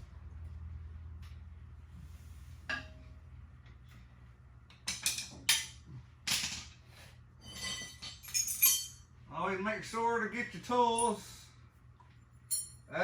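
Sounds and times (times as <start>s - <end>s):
metal tools clinking and clanking: 7.4s - 9.0s, 12.5s - 12.9s.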